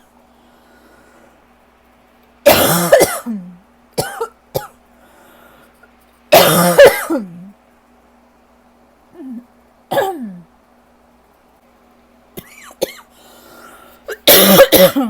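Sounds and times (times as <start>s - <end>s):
person coughing: 2.5s - 4.8s, 6.3s - 7.5s, 9.2s - 10.5s, 12.4s - 13.1s, 14.1s - 15.0s.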